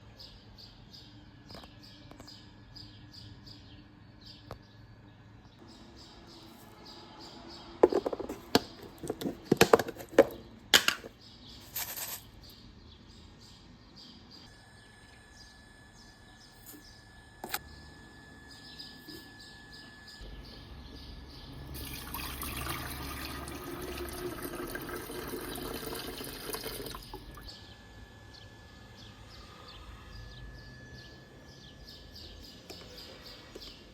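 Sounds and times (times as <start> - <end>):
faint birdsong: 0.0 - 33.9
kettle clattering knocks: 7.8 - 11.1
tap water running: 21.7 - 27.5.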